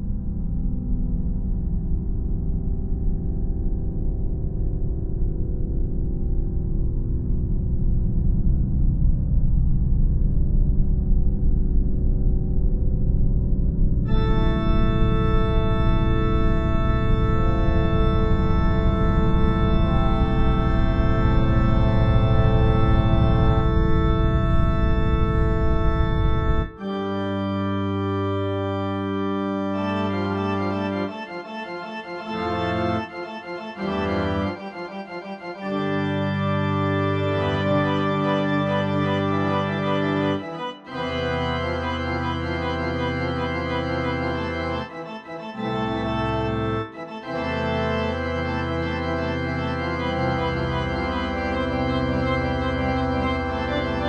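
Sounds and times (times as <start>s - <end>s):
organ chords: 0.0s - 54.0s.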